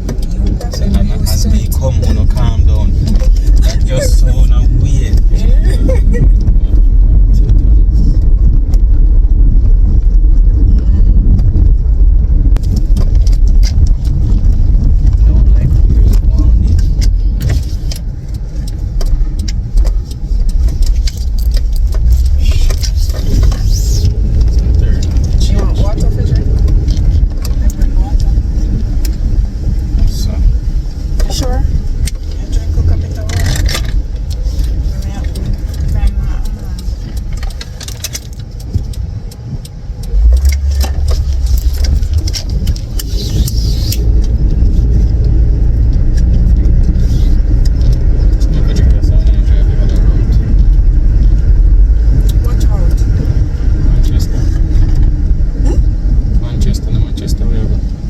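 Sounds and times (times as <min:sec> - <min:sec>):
road and engine rumble: 0:00.0 - 0:58.0
light clicks and rattles: 0:12.6 - 0:58.0
small clicks and knocks: 0:33.0 - 0:51.5.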